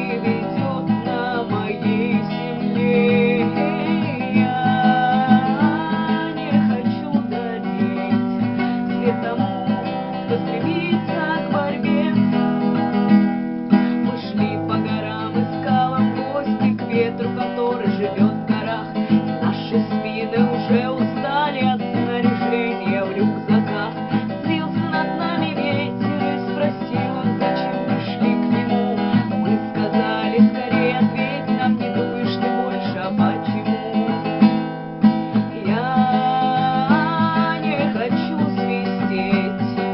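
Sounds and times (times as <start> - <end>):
acoustic guitar music: 0.0 - 39.9.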